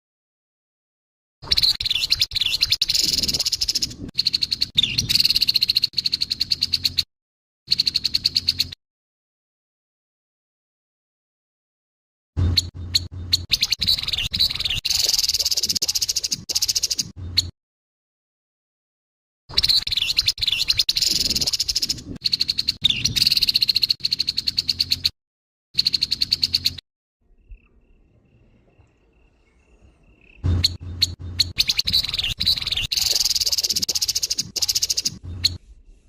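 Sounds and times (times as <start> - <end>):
bird rattling calls: 12.6 - 17.1, 19.6 - 25.1, 30.5 - 35.6.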